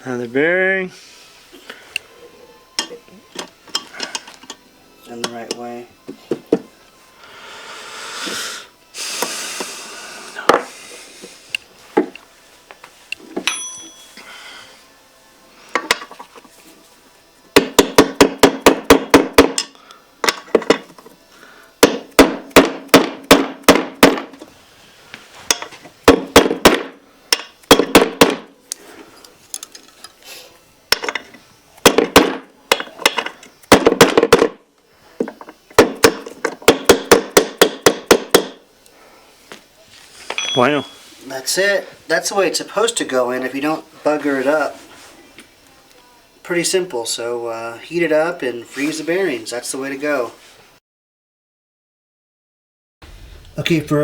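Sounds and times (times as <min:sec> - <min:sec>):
hammer striking metal with ring: 0:13.4 - 0:14.1, 0:21.8 - 0:24.2, 0:40.4 - 0:41.0.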